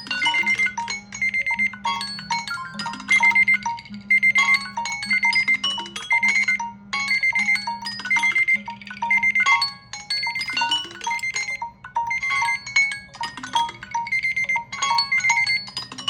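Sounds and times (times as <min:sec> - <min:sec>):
smartphone alarm ringtone: 0:00.0 - 0:16.0.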